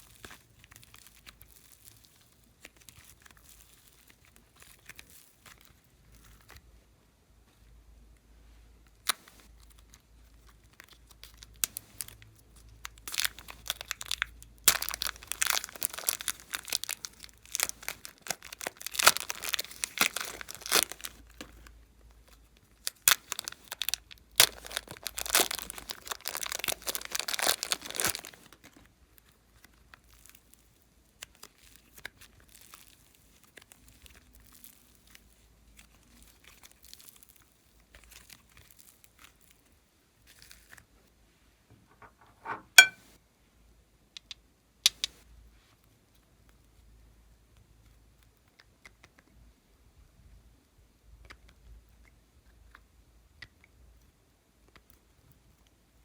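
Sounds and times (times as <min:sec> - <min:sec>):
slime squishing with sticky crackles: 0:00.0 - 0:06.8, 0:08.8 - 0:41.2.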